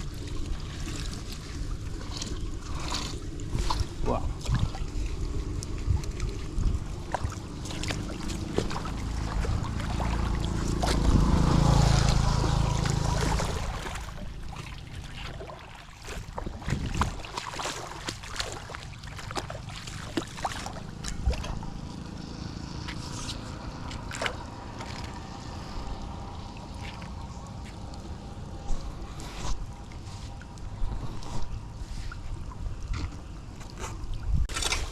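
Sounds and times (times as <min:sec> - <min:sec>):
wind buffeting microphone: 0:00.0 - 0:14.6, 0:16.2 - 0:17.4, 0:24.6 - 0:34.9
floodwater sloshing and gurgling: 0:00.0 - 0:34.9.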